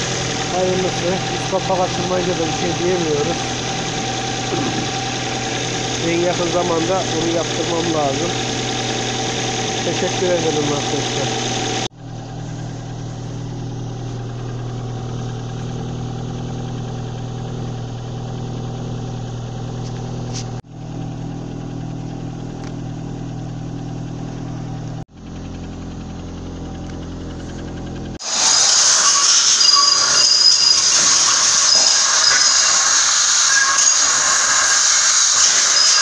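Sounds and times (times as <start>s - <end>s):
car engine idling: 0.0s - 28.4s.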